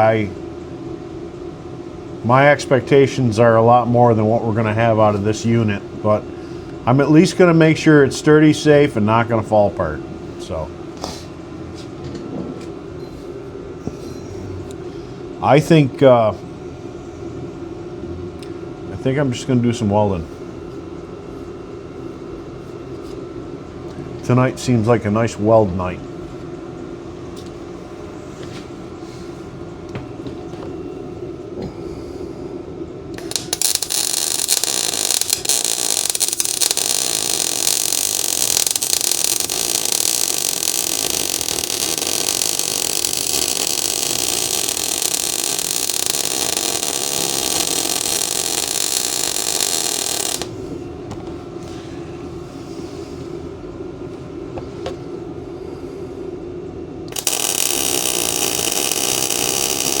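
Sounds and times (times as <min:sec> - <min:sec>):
steady hum: 0:00.0 - 1:00.0
welding arc crackling and hissing: 0:33.2 - 0:50.6, 0:57.1 - 1:00.0.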